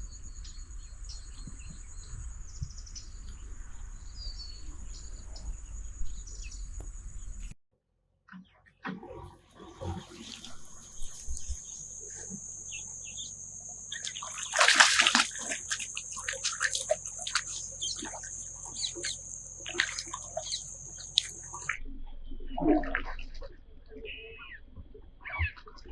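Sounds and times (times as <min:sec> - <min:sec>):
water splashing and sloshing: 0:08.8 - 0:25.9.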